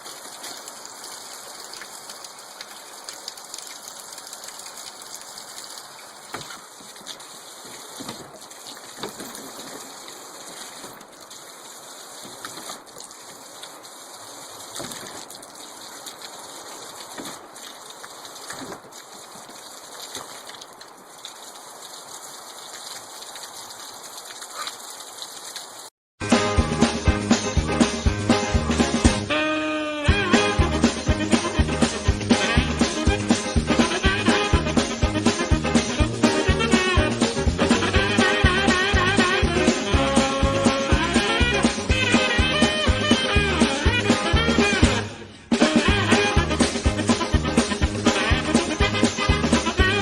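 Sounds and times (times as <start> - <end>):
water spraying and splattering: 0.0 - 50.0
music: 26.2 - 50.0.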